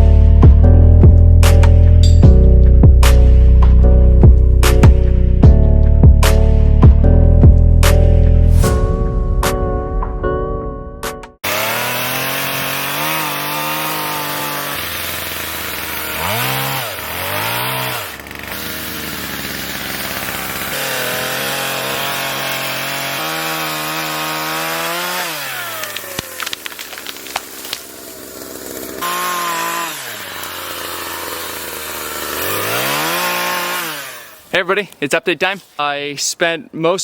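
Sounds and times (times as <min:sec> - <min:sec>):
chainsaw engine revving and idling: 0:11.4 - 0:34.5
sharp snaps and crackles: 0:25.8 - 0:28.0.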